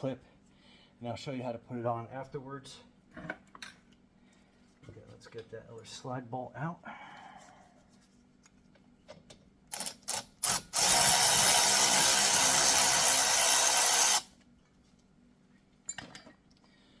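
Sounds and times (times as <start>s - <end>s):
power wrench running: 9.7s - 14.3s.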